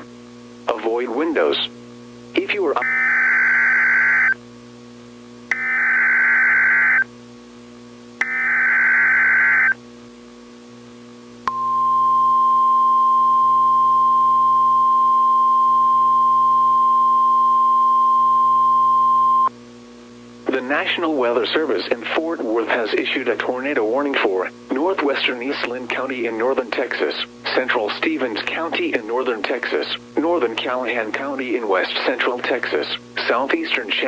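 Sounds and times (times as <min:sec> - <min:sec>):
faint low hum: 0:00.0 - 0:34.0
steady high alarm tone: 0:02.8 - 0:04.4, 0:05.5 - 0:07.1, 0:08.2 - 0:09.8, 0:11.5 - 0:19.5.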